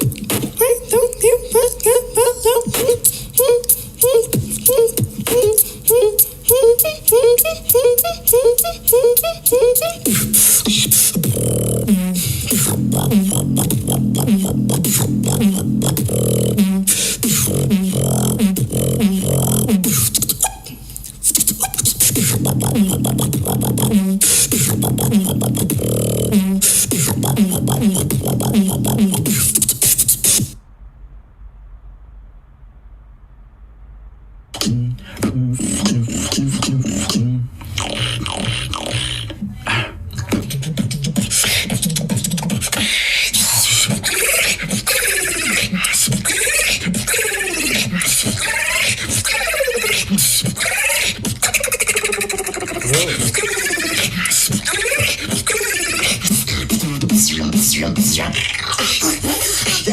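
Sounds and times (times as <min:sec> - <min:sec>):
beatboxing drum hits and clicks: 0:00.0 - 0:30.6, 0:34.6 - 0:39.5, 0:40.1 - 0:59.9
hissing scratch-like vocal noise: 0:00.0 - 0:30.6, 0:34.6 - 0:59.9
hummed bass line: 0:07.1 - 0:20.1, 0:22.2 - 0:30.5, 0:52.8 - 0:53.3.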